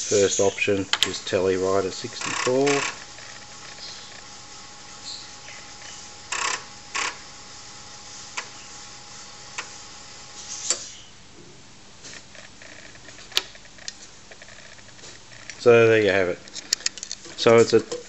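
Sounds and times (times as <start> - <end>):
floppy drive head seeks buzzing: 0.0 - 7.3
floppy drive clicks: 0.7 - 1.3, 2.1 - 4.3.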